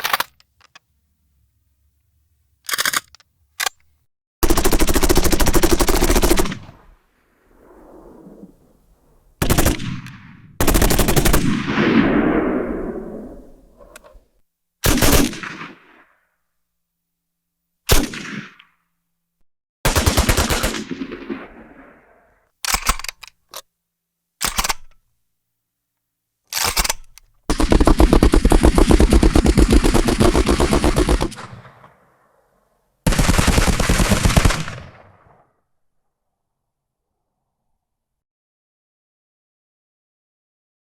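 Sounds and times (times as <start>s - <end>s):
machine gun automatic fire: 4.4s - 6.8s, 9.4s - 12.0s, 14.8s - 15.7s, 19.9s - 21.6s, 26.6s - 31.9s, 33.0s - 35.2s.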